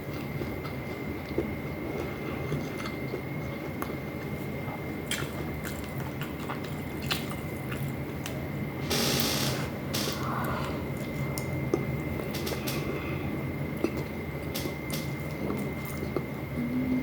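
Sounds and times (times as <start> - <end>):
close chewing with mouth smacks: 0.0 - 8.4, 13.8 - 16.5
background hum: 0.0 - 17.0
thin high whine: 16.6 - 17.0.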